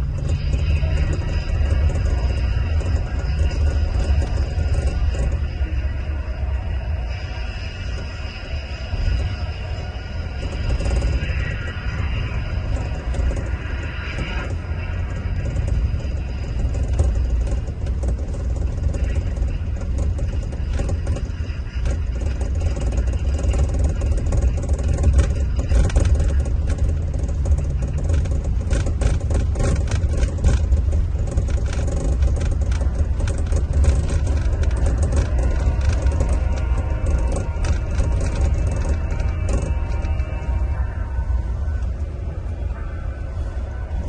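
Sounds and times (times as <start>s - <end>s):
coach diesel engine droning: 0.0s - 44.0s
rattles and knocks: 0.0s - 44.0s.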